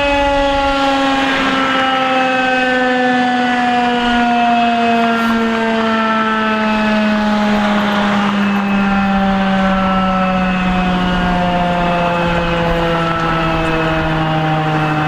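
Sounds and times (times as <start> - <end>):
rotating siren winding down: 0.0 - 15.0.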